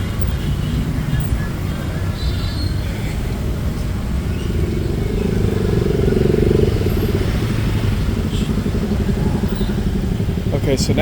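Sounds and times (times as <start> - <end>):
road traffic rumble: 0.0 - 11.0
motorcycle passing close by: 4.2 - 11.0.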